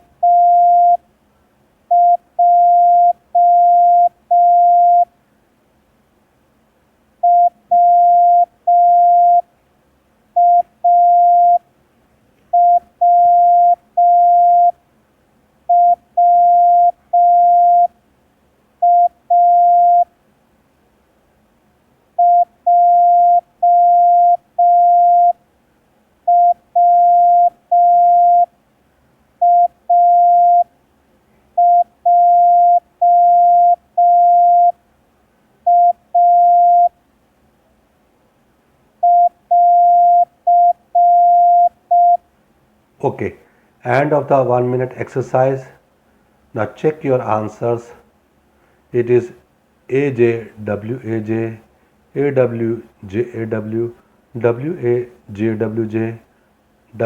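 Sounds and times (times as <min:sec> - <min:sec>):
morse code tone beeping: 0:00.2 - 0:01.0, 0:01.9 - 0:05.1, 0:07.2 - 0:09.4, 0:10.4 - 0:11.6, 0:12.6 - 0:14.8, 0:15.7 - 0:17.9, 0:18.8 - 0:20.1, 0:22.2 - 0:25.4, 0:26.3 - 0:28.5, 0:29.4 - 0:30.7, 0:31.6 - 0:34.8, 0:35.7 - 0:36.9, 0:39.0 - 0:42.2.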